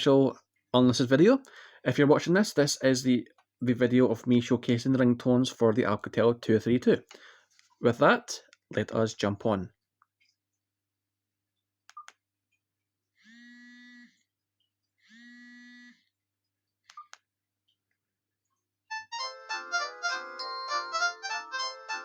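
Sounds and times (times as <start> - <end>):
phone clicks: 16.9 - 17.3
polyphonic ringtone melody: 18.9 - 22.0.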